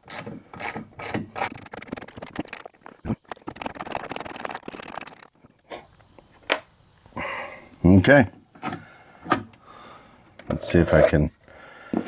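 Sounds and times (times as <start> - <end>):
ratchet wrench clicking: 0.0 - 2.7, 3.3 - 5.3.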